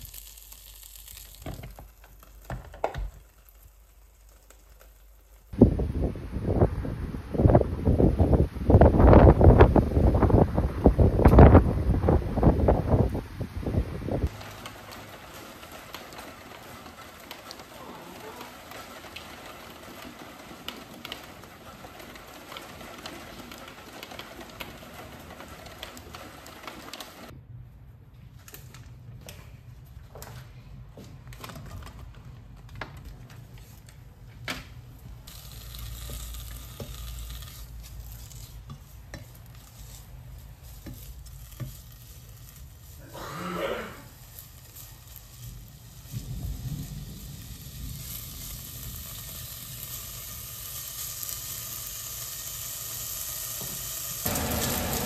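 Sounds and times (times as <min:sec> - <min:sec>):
food sizzling in a pan: 0:00.0 - 0:05.6, 0:14.2 - 0:27.3, 0:35.2 - 0:55.0.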